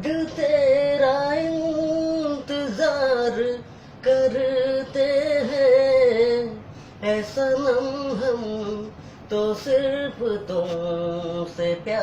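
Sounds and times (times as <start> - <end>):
singer breathing: 3.6 - 4.0, 6.6 - 7.0, 8.9 - 9.3.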